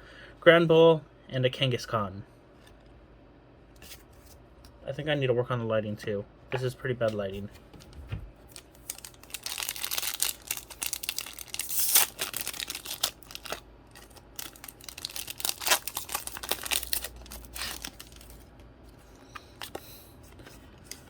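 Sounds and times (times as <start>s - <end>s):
foil wrapper tearing and crinkling: 8.5s - 18.5s.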